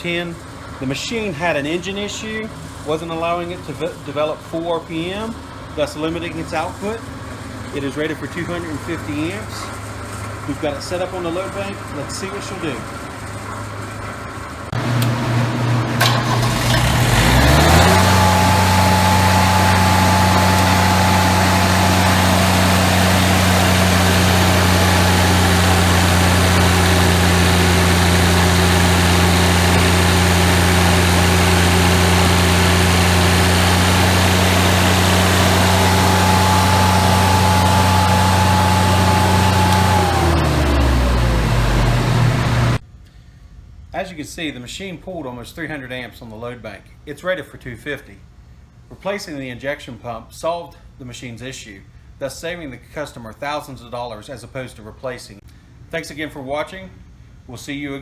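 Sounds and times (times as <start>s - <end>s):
diesel engine revving: 14.8s - 42.8s.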